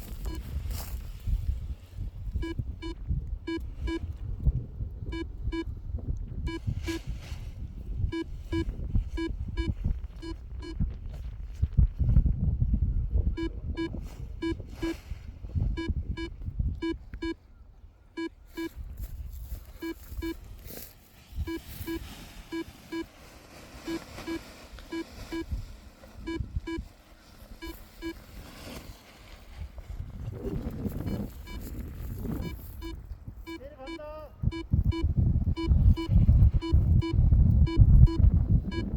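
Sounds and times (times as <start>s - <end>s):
variometer beeping: 0.0s - 0.5s, 2.3s - 4.2s, 5.0s - 5.8s, 6.4s - 7.1s, 8.0s - 10.8s, 13.3s - 15.0s, 15.7s - 17.4s, 18.1s - 18.8s, 19.8s - 20.4s, 21.4s - 23.1s, 23.9s - 25.6s, 26.2s - 26.9s, 27.6s - 28.2s, 31.0s - 38.9s
wind rumble on microphone: 0.0s - 23.0s, 24.2s - 33.7s, 34.3s - 38.9s.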